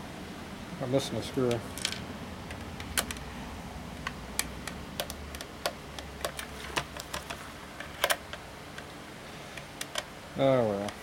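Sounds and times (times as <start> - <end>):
plastic parts clicking and tapping: 4.0 - 8.9, 9.6 - 10.1.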